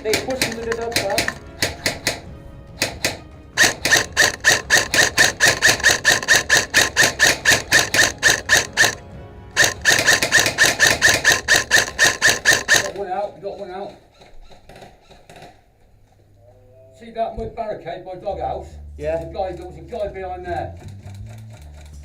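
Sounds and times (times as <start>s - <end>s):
airsoft rifle firing rapid shots: 0.0s - 2.2s, 2.8s - 9.0s, 9.6s - 13.0s.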